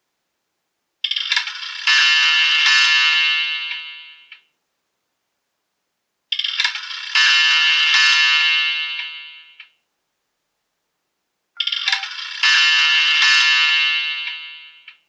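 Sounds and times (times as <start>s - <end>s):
phone ringtone melody: 11.6s - 14.9s.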